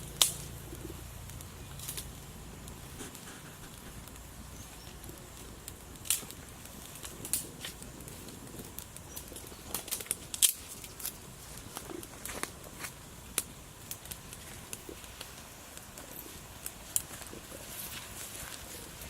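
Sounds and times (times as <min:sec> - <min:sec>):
fire crackling and popping: 0:00.0 - 0:19.0
low steady background noise: 0:00.0 - 0:19.0.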